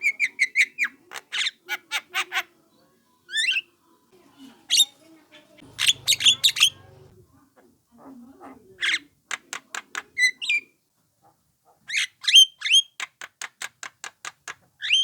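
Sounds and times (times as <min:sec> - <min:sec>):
myna harsh calls: 0:05.6 - 0:07.1.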